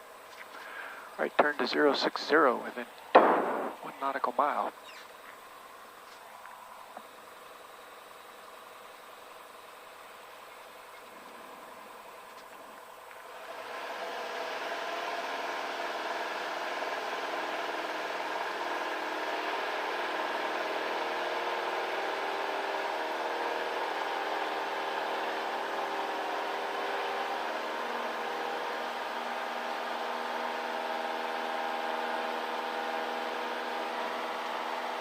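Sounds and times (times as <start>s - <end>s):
propeller plane engine drone: 0.0s - 35.0s.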